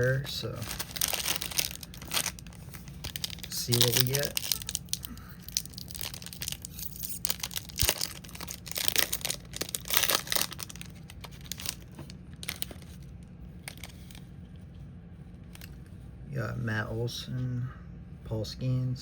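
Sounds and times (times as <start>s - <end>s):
wrapper tearing and crinkling: 0.0s - 14.2s.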